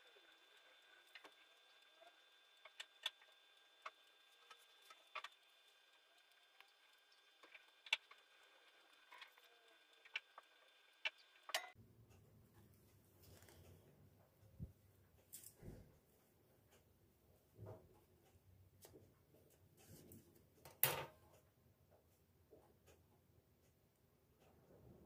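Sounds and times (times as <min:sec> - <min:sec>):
small objects clicking and tapping: 0:00.0 - 0:11.8
faint steady hum: 0:00.0 - 0:25.0
low rumbling room tone: 0:09.7 - 0:25.0.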